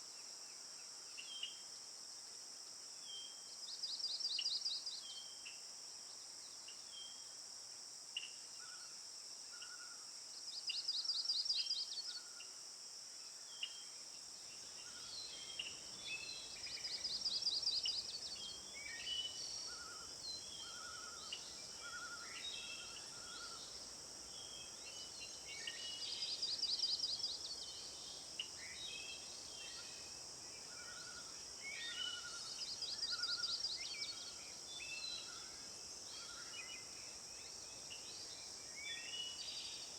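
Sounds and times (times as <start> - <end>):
high insect drone: 12.0 - 39.9.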